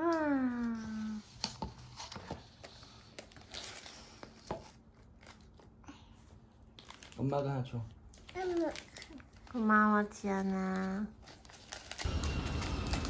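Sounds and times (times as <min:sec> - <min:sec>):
packaging crinkling and rustling: 0:00.9 - 0:05.8, 0:06.6 - 0:09.8, 0:10.4 - 0:13.0.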